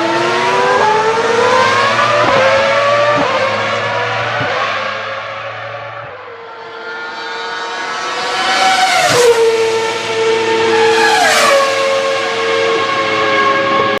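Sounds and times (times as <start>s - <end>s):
racing car engine accelerating: 0.0s - 14.0s.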